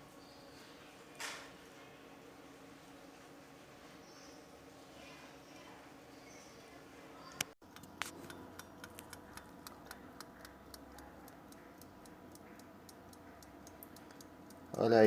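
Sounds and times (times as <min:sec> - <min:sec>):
alarm clock ticking: 0:08.6 - 0:14.8.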